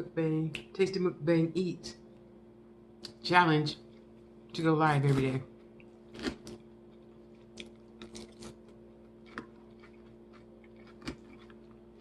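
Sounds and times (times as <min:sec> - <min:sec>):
faint steady hum: 0:00.0 - 0:12.0
crisp chewing crunches: 0:05.0 - 0:12.0.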